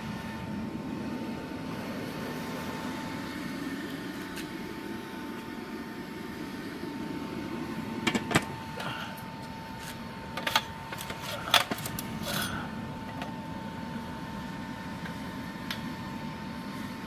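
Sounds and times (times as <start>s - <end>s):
furnace burner rushing: 0.0s - 17.0s
sharp clicks and knocks: 8.0s - 8.5s.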